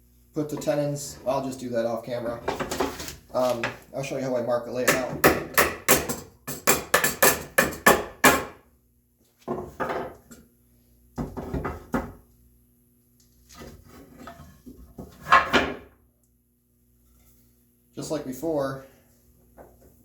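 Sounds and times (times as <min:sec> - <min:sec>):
wooden boards knocking and clattering: 0:11.2 - 0:12.2, 0:14.2 - 0:15.9.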